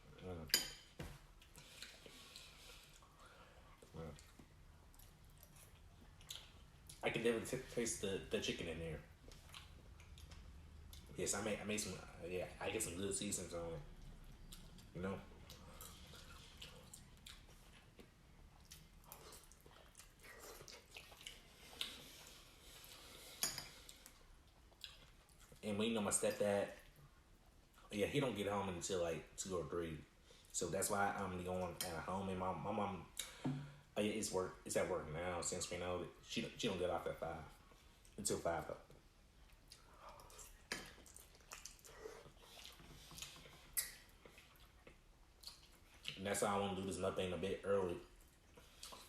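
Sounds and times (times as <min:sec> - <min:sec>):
person chewing with lip smacks: 0:39.4 - 0:46.2.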